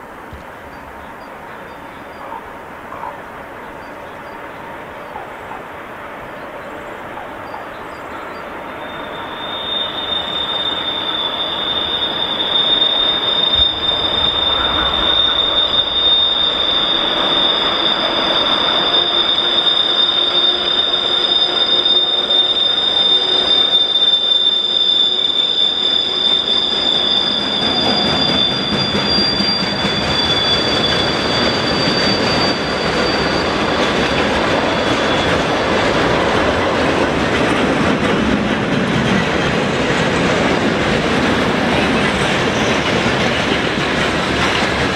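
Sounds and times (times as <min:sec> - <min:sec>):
train rolling on rails: 0:00.0 - 0:44.9
electric locomotive drive whistle: 0:08.3 - 0:36.0.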